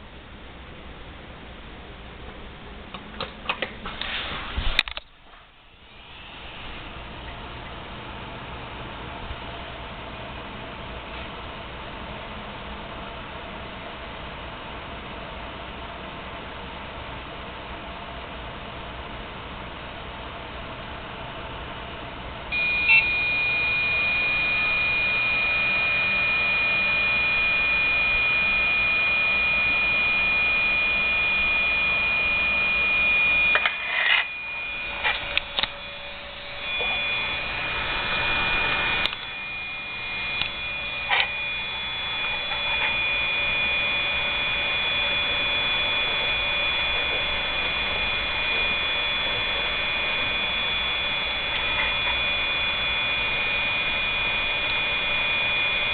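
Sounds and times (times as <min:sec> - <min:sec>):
low steady hum: 0:00.0 - 0:55.9
clicks: 0:04.8 - 0:05.2, 0:34.9 - 0:35.8, 0:39.0 - 0:39.4, 0:40.2 - 0:41.4
high-pitched computer buzz: 0:22.5 - 0:55.9.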